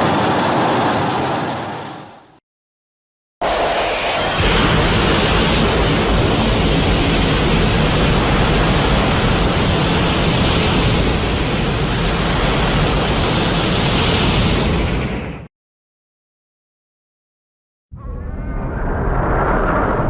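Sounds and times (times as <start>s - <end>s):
loud rushing roar: 3.4s - 15.2s
deep rumble: 18.0s - 20.0s.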